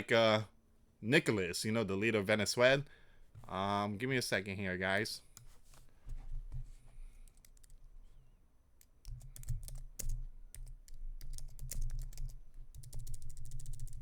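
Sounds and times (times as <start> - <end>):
typing on computer keyboard: 9.0 - 14.0.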